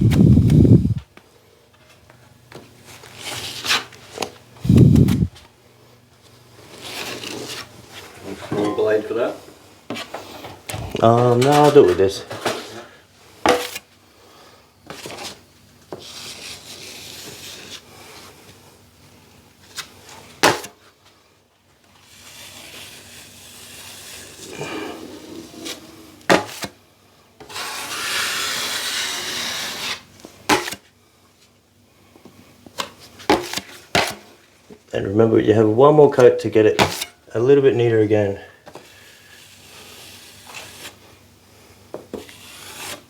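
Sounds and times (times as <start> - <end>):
trowel scraping across ceiling: 22.0 - 26.7, 27.4 - 30.1, 38.7 - 41.0, 42.1 - 43.0.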